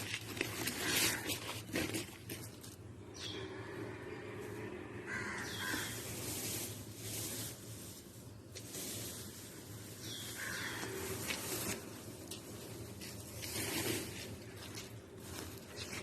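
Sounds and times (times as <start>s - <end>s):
bird calls: 5.1s - 6.1s, 10.0s - 11.6s
swishing rustling noise: 5.5s - 16.0s.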